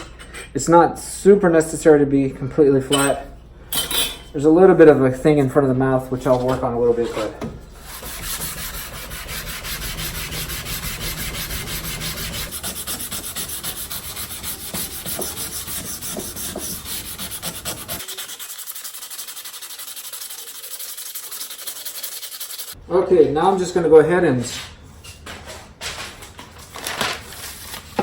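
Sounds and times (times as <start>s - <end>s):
metal plane rubbed on sandpaper: 6.2s - 22.8s.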